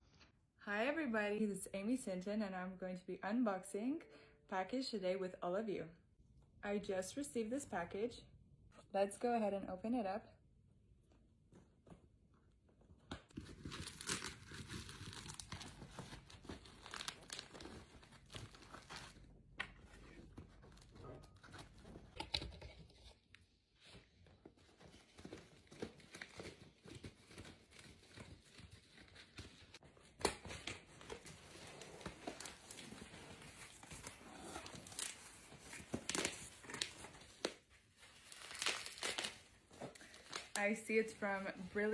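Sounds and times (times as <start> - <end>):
packaging tearing and crinkling: 13.4 - 19.3, 24.9 - 40.6.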